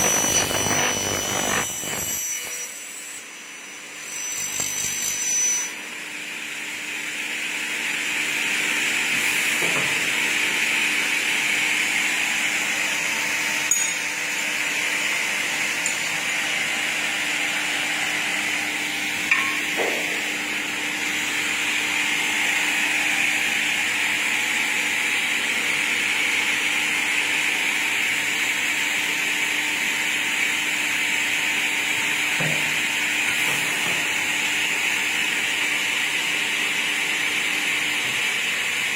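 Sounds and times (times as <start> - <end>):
cutting saw blades whirring: 0.0 - 6.2.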